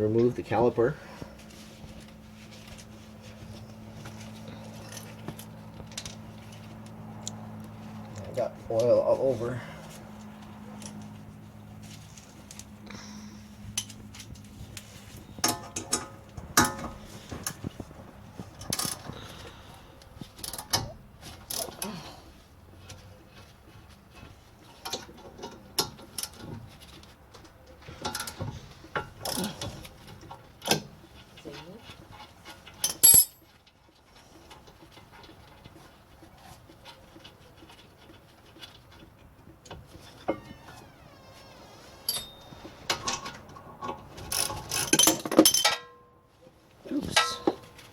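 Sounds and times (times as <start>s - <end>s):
hand tools clinking on metal: 32.7s - 33.5s, 42.1s - 43.3s, 44.7s - 46.1s, 47.0s - 47.8s
sharp metal clanks: 32.8s - 33.5s, 42.1s - 42.6s.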